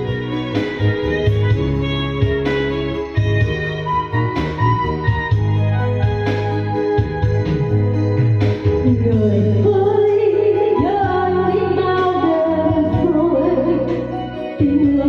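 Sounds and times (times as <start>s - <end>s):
slow ballad music: 0.0s - 15.0s.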